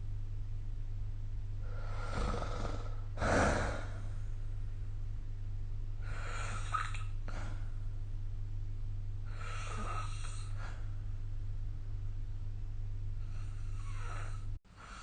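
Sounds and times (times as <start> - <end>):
steady low hum: 0.0 - 15.0
person snoring: 1.6 - 4.2, 6.0 - 7.6, 9.3 - 10.9, 13.2 - 15.0.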